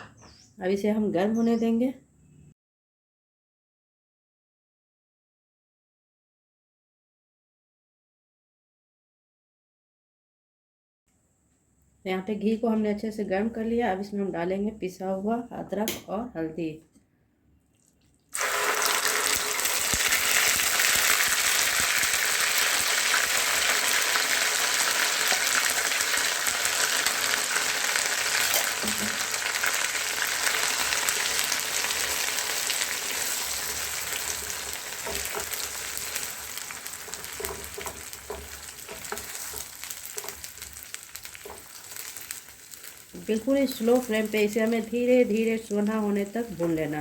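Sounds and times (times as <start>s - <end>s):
paste sizzling in hot ghee: 18.3s - 46.9s.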